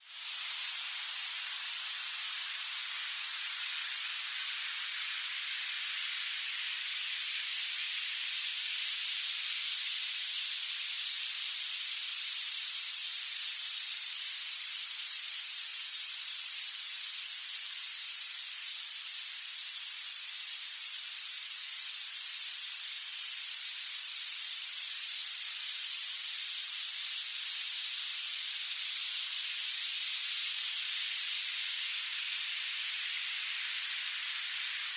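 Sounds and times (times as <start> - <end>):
bright high-pitched hiss: 0.0 - 34.9.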